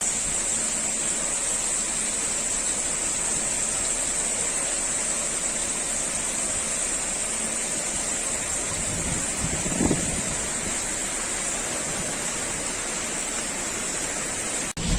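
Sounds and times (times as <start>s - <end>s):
high hiss: 0.0s - 14.9s
heavy surf: 7.8s - 14.9s
strong wind: 8.4s - 13.2s, 14.6s - 14.9s.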